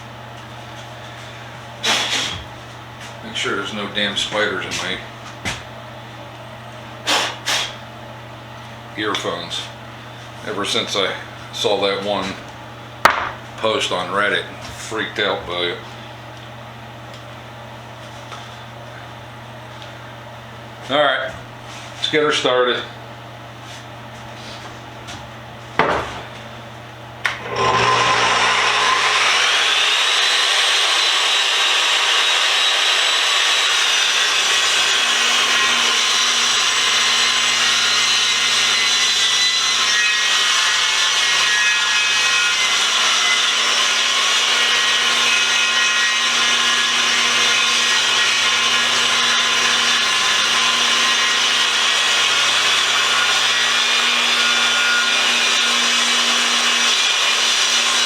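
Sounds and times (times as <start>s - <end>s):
table saw whine: 1.1s - 2.5s, 3.2s - 5.1s, 27.2s - 58.0s.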